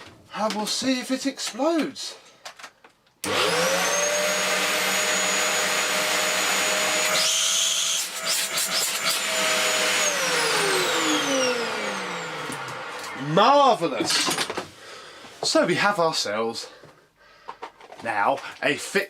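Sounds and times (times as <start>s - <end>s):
vacuum cleaner motor whining: 3.2s - 14.0s
motor spinning down: 3.3s - 13.4s.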